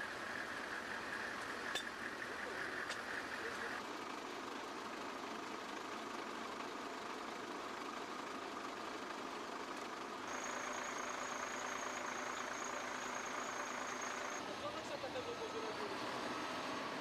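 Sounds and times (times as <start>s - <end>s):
vehicle engines running: 0.0s - 17.0s
high-pitched whine: 10.3s - 14.4s.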